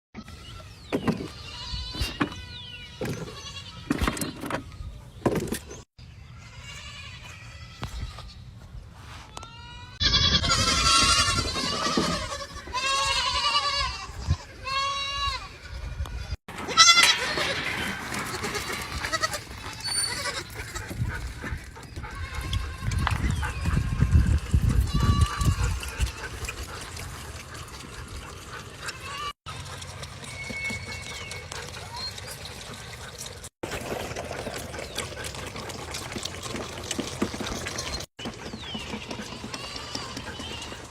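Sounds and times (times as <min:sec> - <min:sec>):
small livestock bleating: 0:06.4 - 0:08.4, 0:09.3 - 0:17.4
goats bleating: 0:09.4 - 0:15.9, 0:16.6 - 0:17.6, 0:18.2 - 0:20.9, 0:28.9 - 0:29.4, 0:39.0 - 0:40.8.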